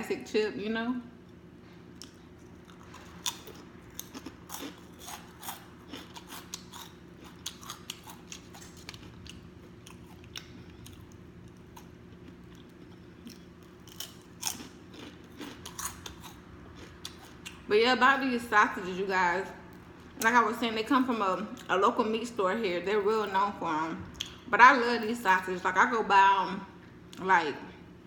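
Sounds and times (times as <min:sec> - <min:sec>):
chewing crunchy food: 0:01.9 - 0:17.7.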